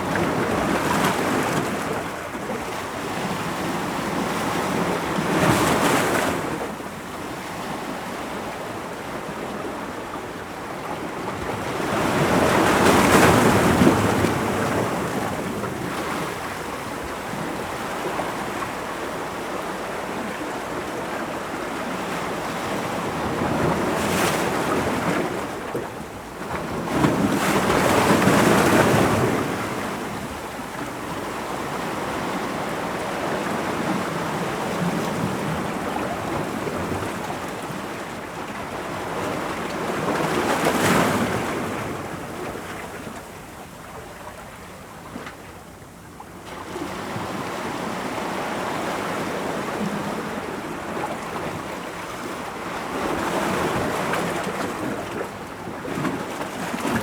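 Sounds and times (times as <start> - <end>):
ocean waves breaking on rocks: 10.9 - 43.2.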